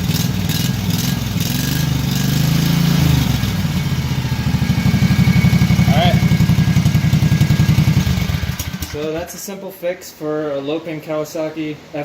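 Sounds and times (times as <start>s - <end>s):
mower engine revving and idling: 0.0s - 9.1s.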